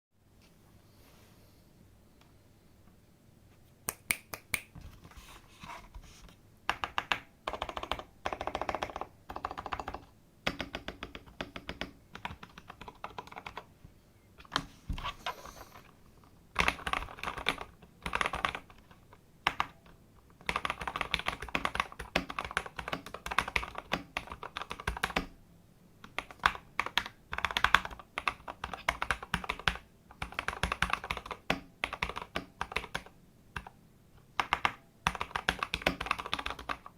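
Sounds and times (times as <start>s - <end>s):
mechanical keyboard typing: 6.7s - 13.7s, 16.5s - 25.3s, 26.0s - 33.8s, 34.4s - 36.9s.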